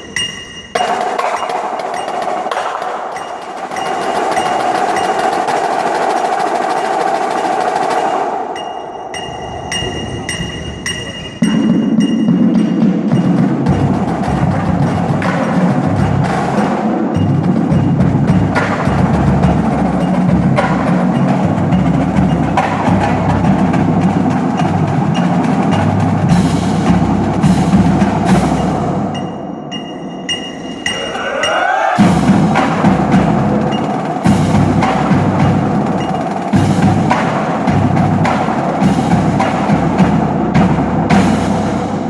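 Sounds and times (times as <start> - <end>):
marching drumline playing: 0.0 - 29.2, 30.0 - 42.0.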